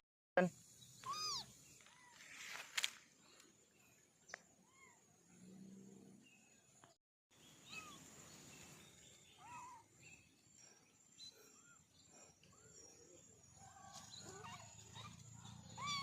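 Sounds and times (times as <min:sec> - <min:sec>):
kitten mewing: 0:01.0 - 0:01.4.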